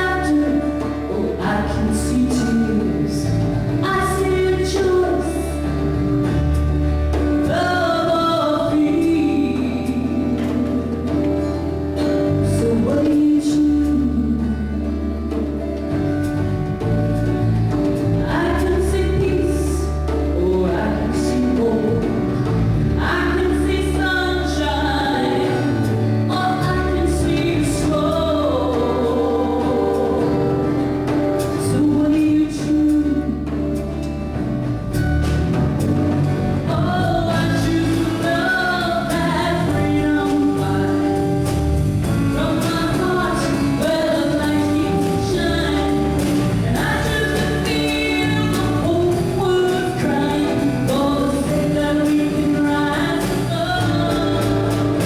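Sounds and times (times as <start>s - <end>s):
band accompaniment: 0.0s - 55.0s
singer with wavering vocal: 18.3s - 33.8s.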